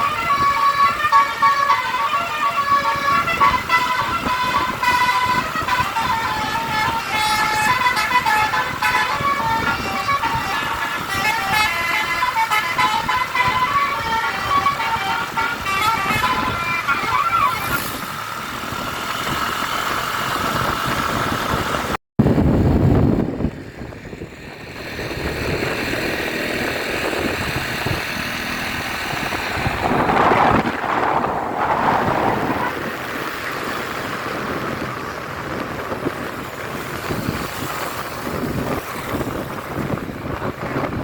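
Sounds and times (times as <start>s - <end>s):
bus multi-tone horn tune: 0.0s - 19.7s, 24.4s - 34.8s
heavy vehicle rumbling past: 0.0s - 41.0s
street traffic noise: 0.0s - 41.0s.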